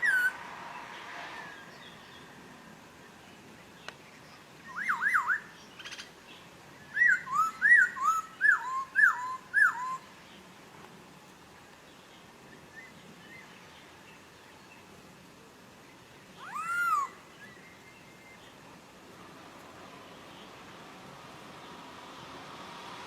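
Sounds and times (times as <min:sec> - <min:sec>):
songbird whistling: 0:04.6 - 0:06.0, 0:06.9 - 0:10.0, 0:16.4 - 0:18.4.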